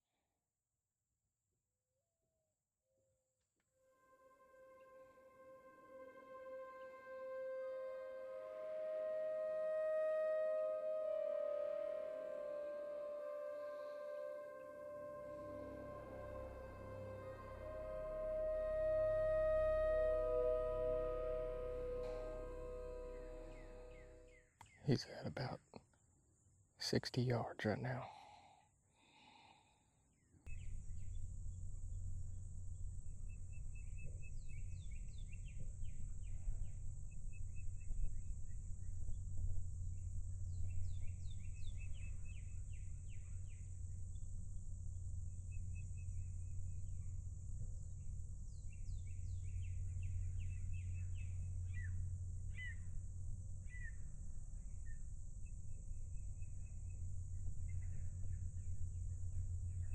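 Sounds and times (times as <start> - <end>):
steady low hum: 4.4 - 24.5, 30.5 - 59.9
high insect-like drone: 12.4 - 24.3
songbirds singing: 48.4 - 59.9.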